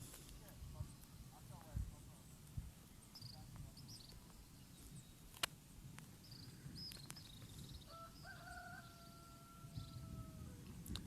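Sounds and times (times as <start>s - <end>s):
small birds chirping: 0.0s - 11.0s
rooster crowing: 7.8s - 10.6s.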